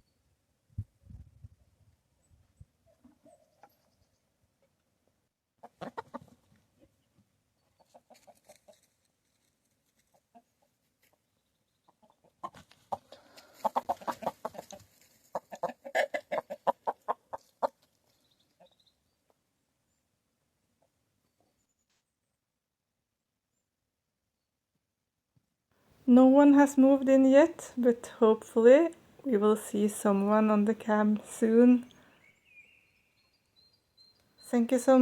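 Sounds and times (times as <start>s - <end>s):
chickens clucking: 5.6s - 7.0s, 7.6s - 8.9s, 10.1s - 18.8s.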